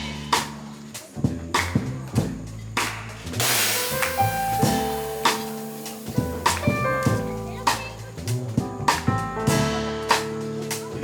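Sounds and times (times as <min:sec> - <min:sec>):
jazz trio playing: 0:00.0 - 0:11.0
cymbal crash: 0:03.4 - 0:08.1.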